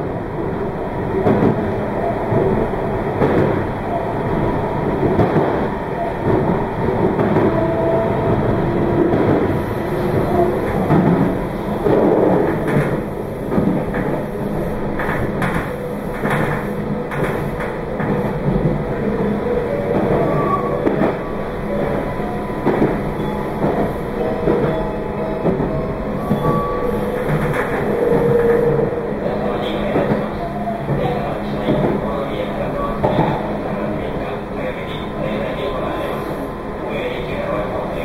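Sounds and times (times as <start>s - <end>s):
train wheels rumbling on rail: 0.0s - 38.0s.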